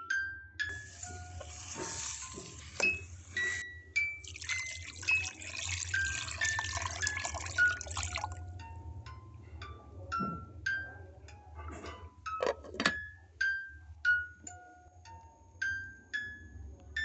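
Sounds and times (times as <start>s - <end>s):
light mallet music: 0.0s - 17.0s
running water splashing: 0.7s - 3.6s, 4.2s - 8.4s.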